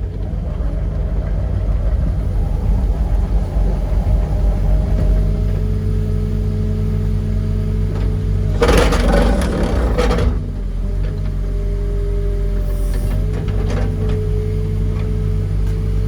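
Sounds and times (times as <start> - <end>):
mid-pitched hum: 0.0 - 12.4
engine running: 0.0 - 16.0.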